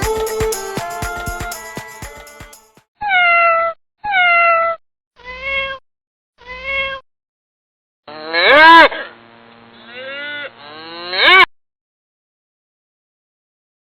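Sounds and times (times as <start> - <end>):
music: 0.0 - 2.8
cat meowing: 3.0 - 5.8, 6.4 - 7.0.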